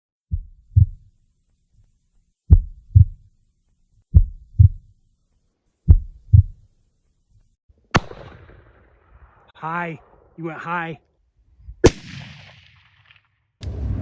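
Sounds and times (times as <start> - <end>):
heartbeat thumps: 0.3 - 1.1, 2.5 - 3.3, 4.1 - 4.9, 5.9 - 6.7.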